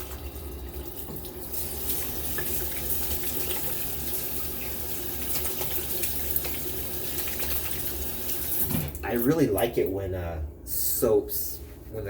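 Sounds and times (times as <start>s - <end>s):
tap water running into sink: 0.0s - 9.4s.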